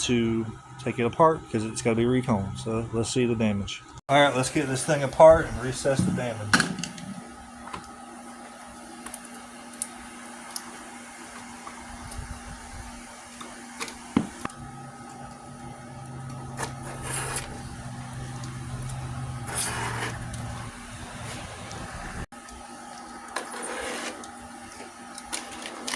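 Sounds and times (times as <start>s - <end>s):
parts clicking and knocking: 5.9s - 7.9s.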